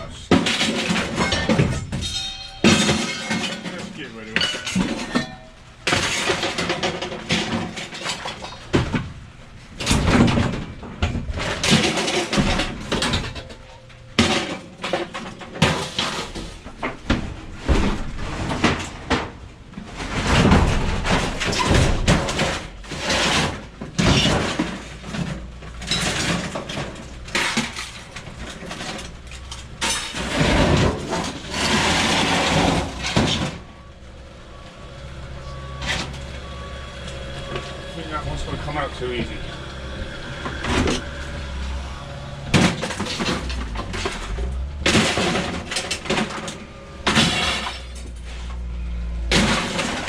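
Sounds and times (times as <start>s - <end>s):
scrap metal clanking onto pile: 0.0s - 50.0s.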